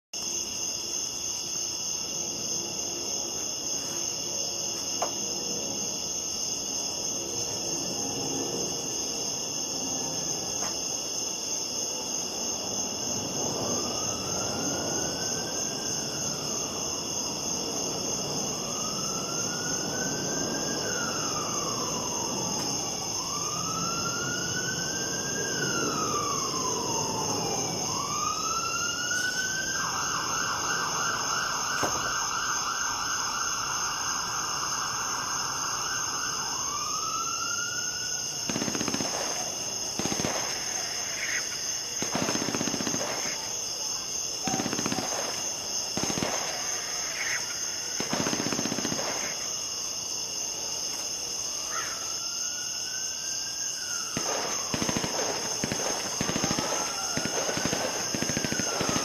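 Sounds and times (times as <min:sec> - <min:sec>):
insects chorus: 0:00.2 - 0:59.0
emergency vehicle siren wailing: 0:12.2 - 0:49.6, 0:51.4 - 0:59.0.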